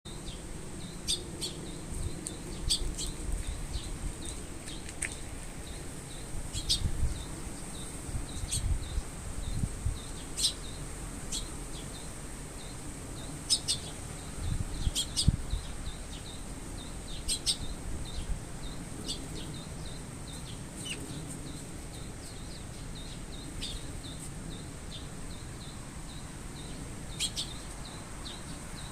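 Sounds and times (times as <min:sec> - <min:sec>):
sparrow chirping: 0:00.1 - 0:04.9, 0:05.6 - 0:28.9.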